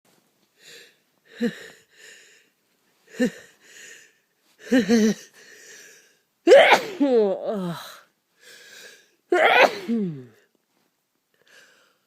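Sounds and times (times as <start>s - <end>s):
person gasping before sneeze: 4.6s - 10.5s.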